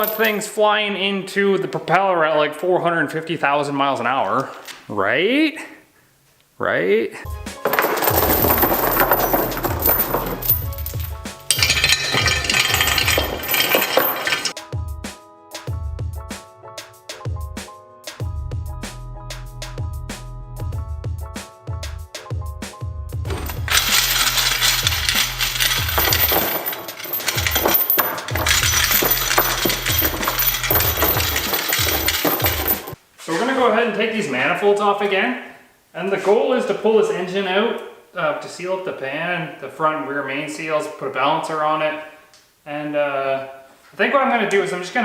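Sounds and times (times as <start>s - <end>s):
chain rattling inside metal pipe: 7.6s - 14.6s, 23.3s - 33.0s
music with steady beat: 14.6s - 23.6s.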